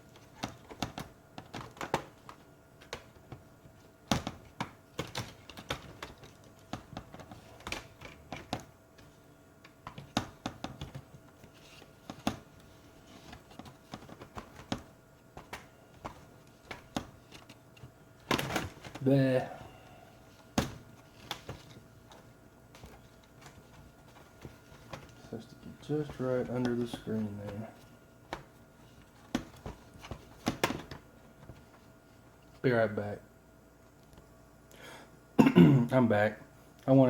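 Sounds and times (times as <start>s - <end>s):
hands clicking laptop parts: 0.1s - 19.0s, 20.3s - 27.7s.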